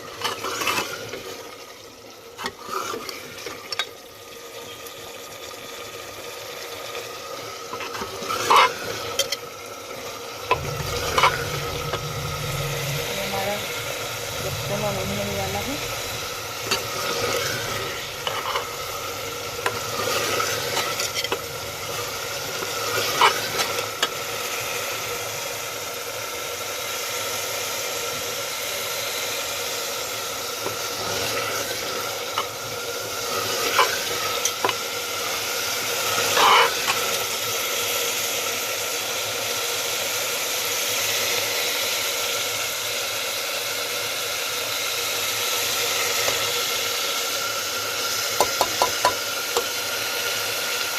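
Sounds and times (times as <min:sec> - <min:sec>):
curry sizzling in a pan: 0:00.0 - 0:50.9
spoon knocking against pan: 0:48.4 - 0:49.2.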